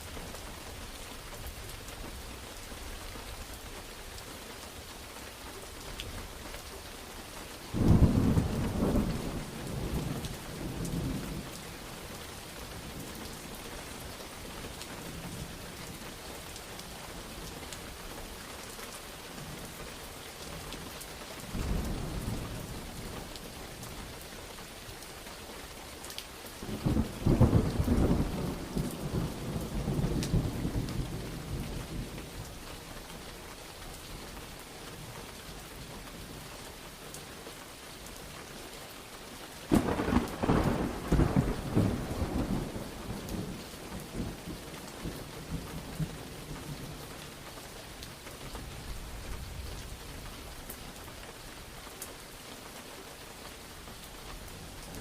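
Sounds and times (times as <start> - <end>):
steady rain: 0.0 - 55.0
thunder rolling: 39.7 - 43.4.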